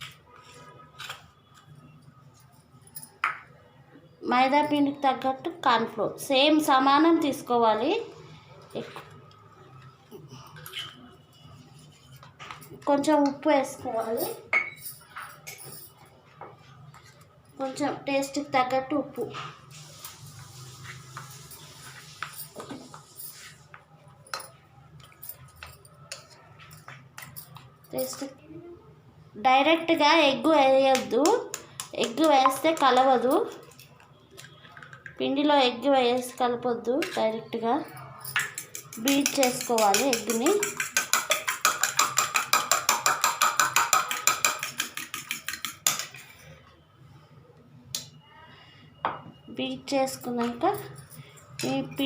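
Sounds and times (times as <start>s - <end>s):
spoon scraping mixing bowl: 10.1s - 13.4s, 38.3s - 46.6s
egg beaten with metal utensil: 30.7s - 33.8s, 38.3s - 46.3s.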